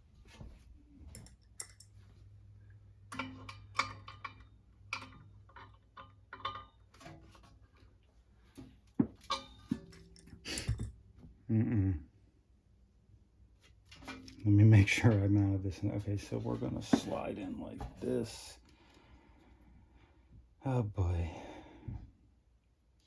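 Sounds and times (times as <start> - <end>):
metal clicks and knocks: 3.0 - 7.6.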